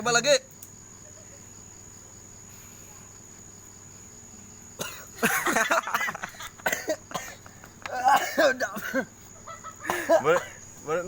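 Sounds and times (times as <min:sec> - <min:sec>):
man coughing hard: 0:04.8 - 0:09.1, 0:09.8 - 0:10.6.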